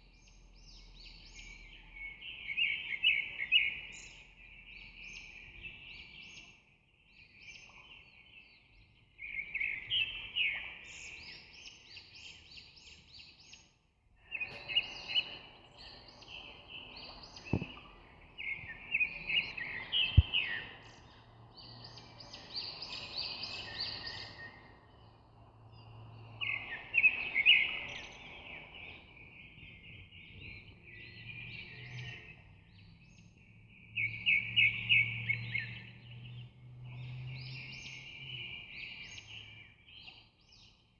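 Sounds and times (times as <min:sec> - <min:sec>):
birds chirping and chattering: 0:07.2 - 0:32.8.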